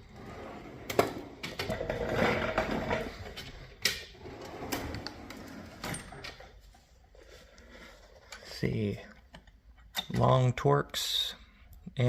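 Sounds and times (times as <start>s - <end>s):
tools scraping and shuffling: 0.2s - 8.6s.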